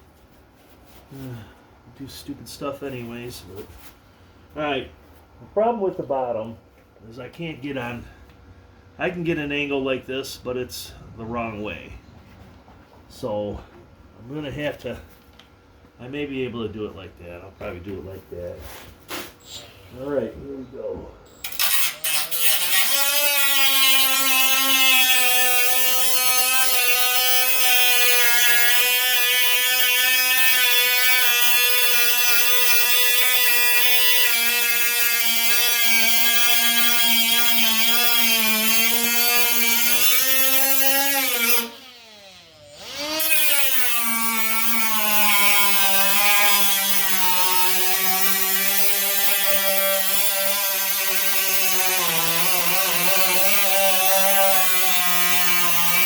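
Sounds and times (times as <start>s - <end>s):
power cutting tool whining: 21.4s - 56.0s.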